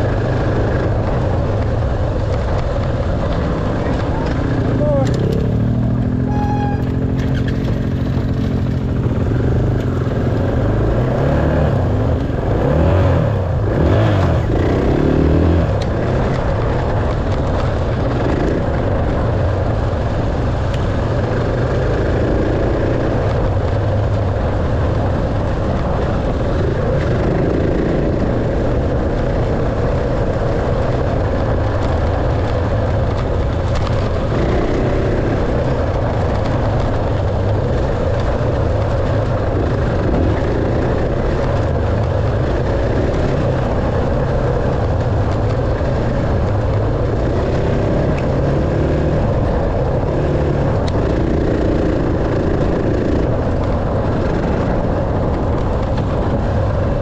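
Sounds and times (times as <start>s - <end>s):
dirt bike engine revving: 3.2s - 16.4s.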